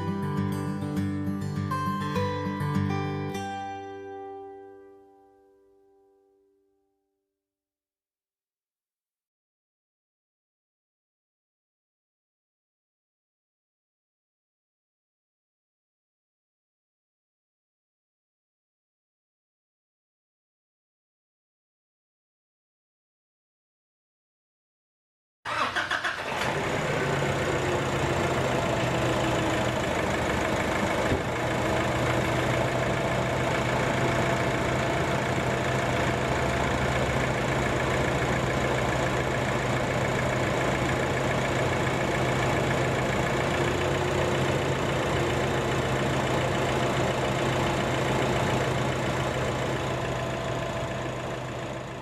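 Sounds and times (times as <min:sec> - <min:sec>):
diesel engine idling: 0:25.5 - 0:52.0.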